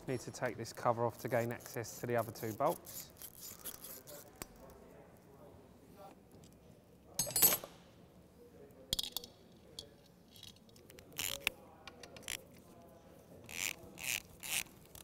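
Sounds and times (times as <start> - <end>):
tools clicking and rattling: 9.0 - 12.4.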